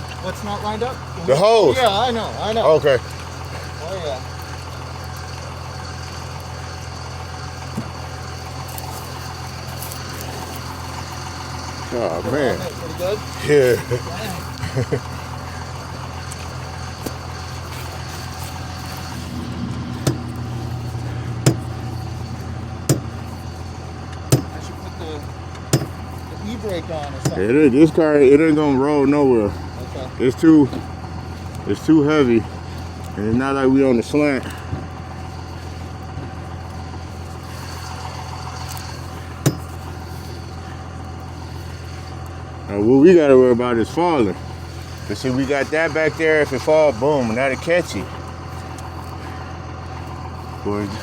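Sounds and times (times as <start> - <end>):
vehicle engine idling: 0.0 - 51.0.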